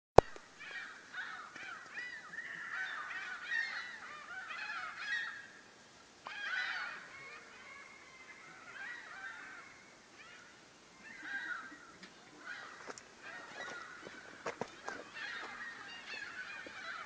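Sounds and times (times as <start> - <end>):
gulls calling: 0.2 - 17.0.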